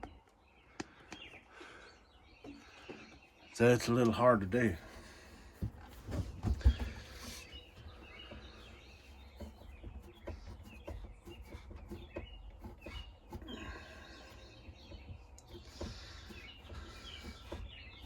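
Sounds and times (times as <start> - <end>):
faint birds chirping: 0.0 - 18.0
knocks: 4.8 - 18.0.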